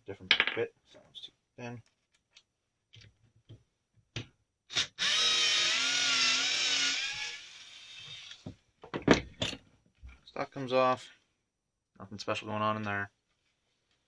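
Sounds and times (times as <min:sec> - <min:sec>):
electric screwdriver whirring: 0:04.7 - 0:08.4.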